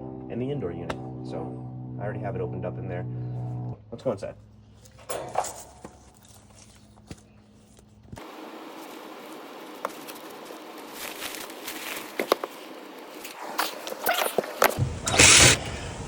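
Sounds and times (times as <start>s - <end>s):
steady low hum: 0.0s - 16.0s
footsteps: 4.4s - 15.6s
steady hiss: 8.2s - 16.0s.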